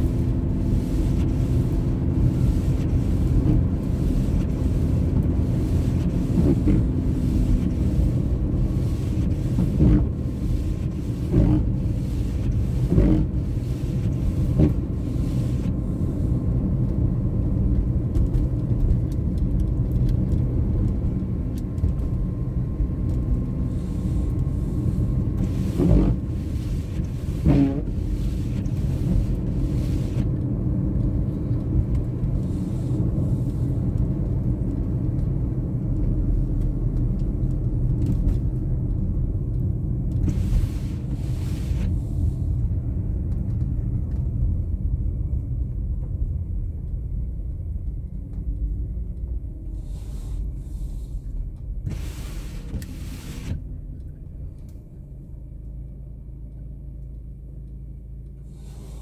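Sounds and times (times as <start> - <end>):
car engine and tyre rumble: 0.0 - 59.0
brief hissing sweeps: 49.8 - 51.2, 58.5 - 59.0.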